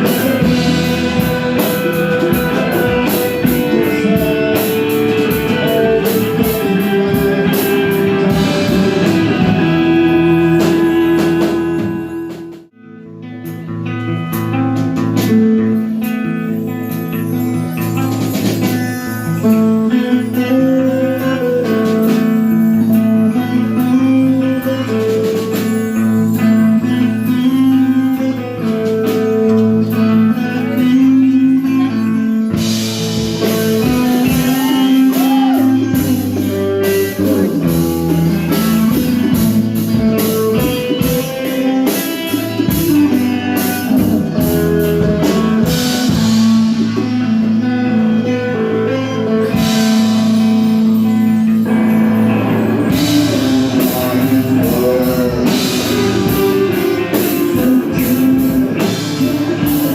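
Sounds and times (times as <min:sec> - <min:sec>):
bass line: 0:00.0 - 0:59.9
guitar-led music: 0:00.0 - 0:59.9
cymbals: 0:15.0 - 0:59.9.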